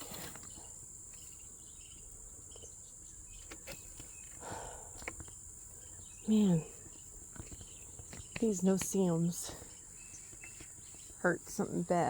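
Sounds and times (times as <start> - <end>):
brief rustle: 0.0 - 0.7
insects trilling: 0.0 - 12.0.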